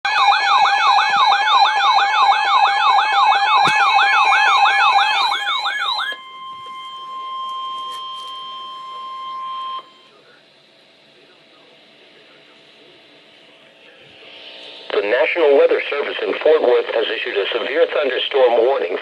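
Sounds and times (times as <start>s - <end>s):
electronic siren wailing: 0.1s - 10.1s.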